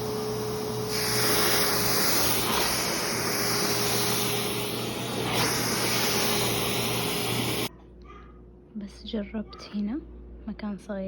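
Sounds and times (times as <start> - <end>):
vacuum cleaner running: 0.0 - 7.7.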